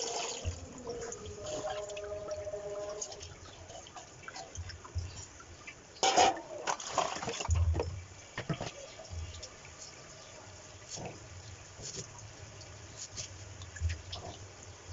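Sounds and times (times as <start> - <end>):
water splashing in a sink: 0.0 - 14.9.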